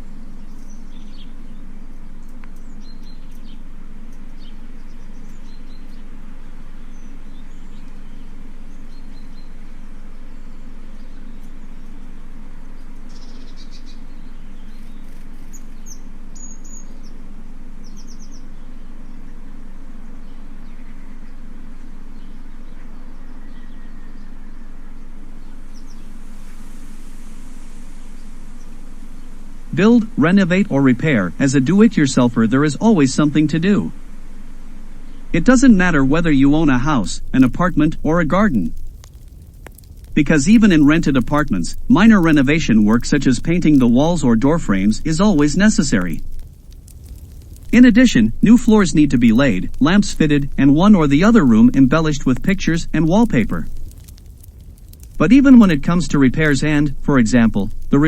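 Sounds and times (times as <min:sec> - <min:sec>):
low background drone: 0:00.0 - 0:58.0
faint bird chirps: 0:02.5 - 0:39.0.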